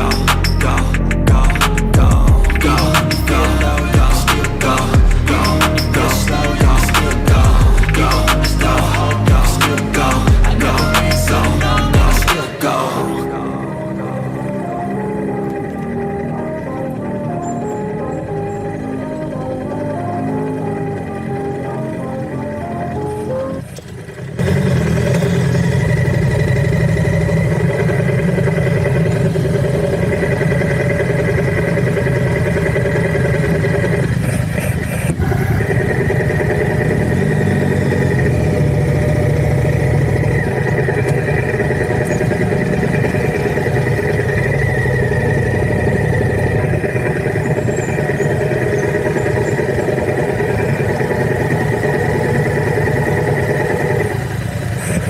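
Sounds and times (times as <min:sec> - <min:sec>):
vehicle engine running: 0:00.0 - 0:55.0.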